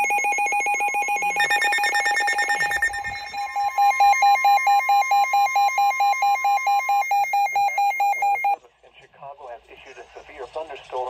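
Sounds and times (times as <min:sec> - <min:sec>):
steady electronic tone: 0:00.0 - 0:08.6
weather radio alert beeps: 0:00.0 - 0:08.6.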